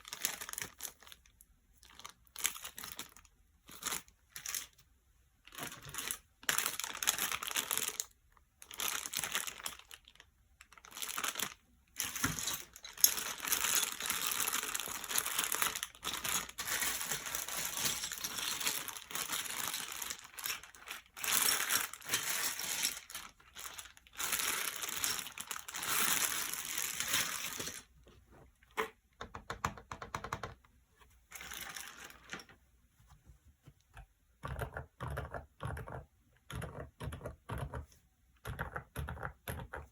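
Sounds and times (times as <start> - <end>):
packaging crinkling: 5.4 - 28.0, 31.3 - 32.5
soft keyboard keystrokes: 29.2 - 30.7.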